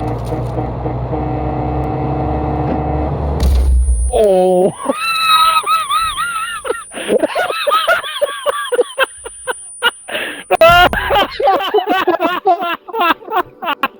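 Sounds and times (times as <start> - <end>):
person laughing wheezily: 4.2 - 13.9.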